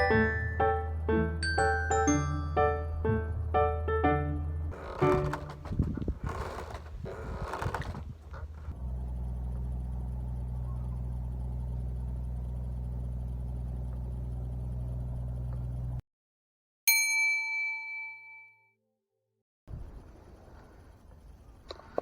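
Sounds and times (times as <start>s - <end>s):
steady low hum: 0.0s - 16.0s
bright bell-like ding: 16.9s - 18.7s.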